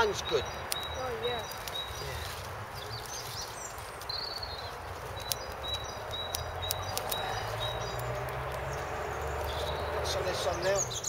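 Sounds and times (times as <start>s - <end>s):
bird chirping: 0.0s - 11.0s
campfire crackling and popping: 0.0s - 11.0s.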